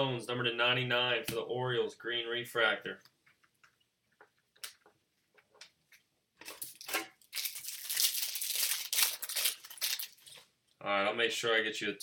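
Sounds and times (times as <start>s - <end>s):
foil wrapper crinkling: 6.4s - 10.5s.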